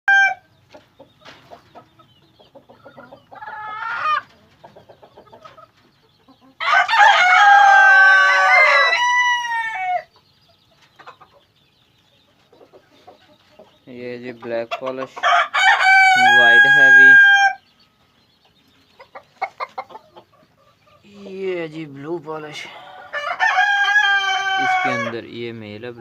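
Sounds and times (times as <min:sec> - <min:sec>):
rooster crowing: 0:00.1 - 0:00.4, 0:06.6 - 0:10.1, 0:15.2 - 0:17.6, 0:22.7 - 0:25.1
chickens clucking: 0:00.1 - 0:26.0.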